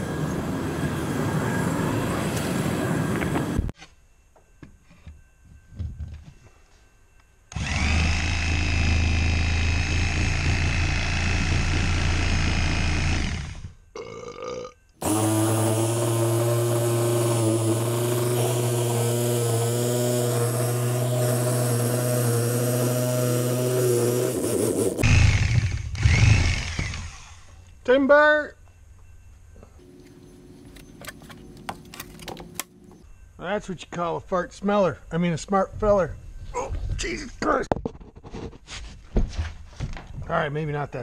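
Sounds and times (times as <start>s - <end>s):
power tool running: 7.5s - 13.8s, 15.0s - 27.6s.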